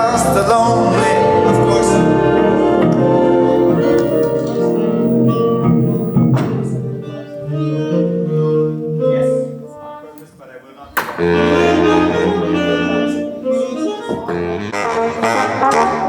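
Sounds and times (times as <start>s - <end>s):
big band playing sustained chords: 0.8s - 7.0s.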